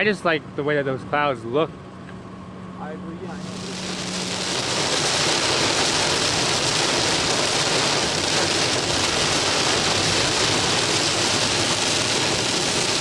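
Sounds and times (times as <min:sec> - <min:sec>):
heavy rain hiss: 0:03.2 - 0:13.0.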